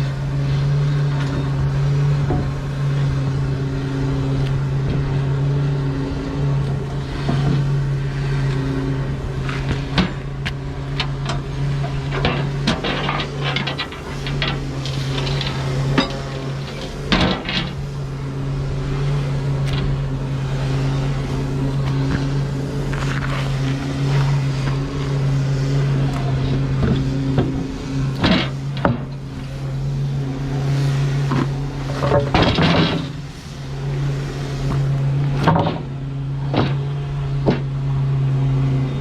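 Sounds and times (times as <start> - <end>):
truck engine idling: 0.0 - 39.0
knocks and clanks: 9.5 - 18.0, 26.8 - 29.2, 31.2 - 33.2, 35.2 - 37.7.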